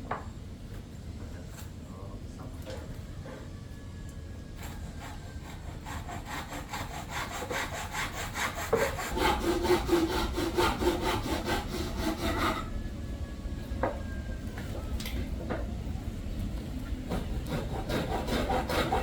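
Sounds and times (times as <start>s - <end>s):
hand saw cutting wood: 4.6s - 12.7s, 17.1s - 19.0s.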